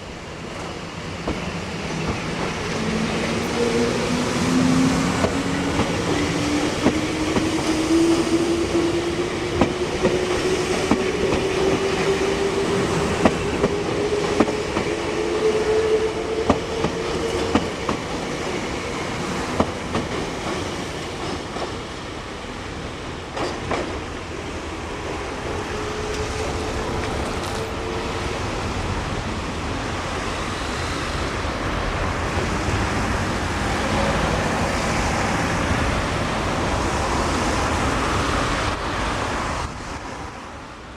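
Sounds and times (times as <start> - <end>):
train wheels clacking over rail joints: 23.3 - 24.1.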